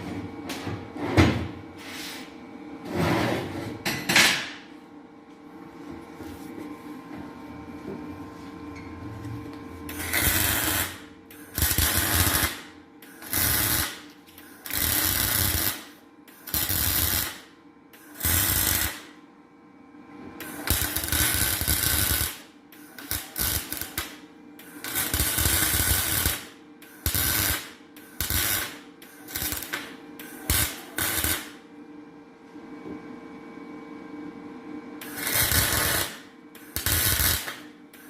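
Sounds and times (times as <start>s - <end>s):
welding arc crackling: 9.9s - 19.1s, 20.4s - 31.6s, 35.0s - 38.0s.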